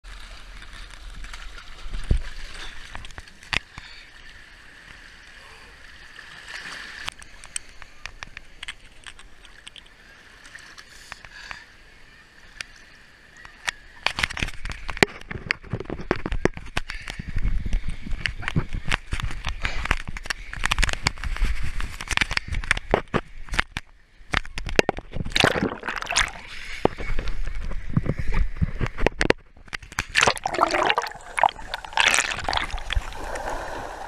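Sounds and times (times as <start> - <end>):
water lapping at shore: 29.6 - 34.0.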